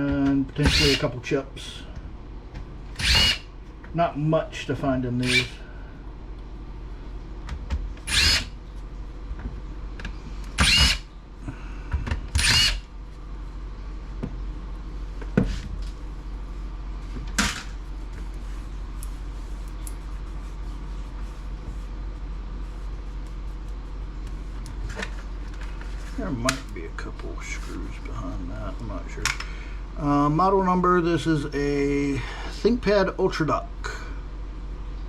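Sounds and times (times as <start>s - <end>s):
power drill spinning: 0.6s - 1.1s, 3.0s - 3.5s, 5.2s - 5.6s, 8.0s - 8.5s, 10.6s - 11.0s, 12.4s - 12.9s.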